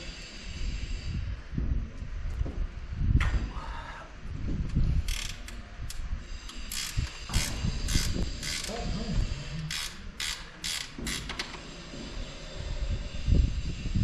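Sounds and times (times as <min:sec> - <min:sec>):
ratchet spanner clicking: 0:05.0 - 0:08.8, 0:09.7 - 0:11.6.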